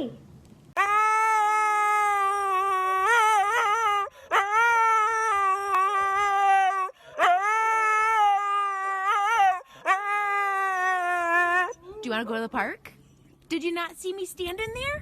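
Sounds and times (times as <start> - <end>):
pet animal howling: 0.8 - 12.4.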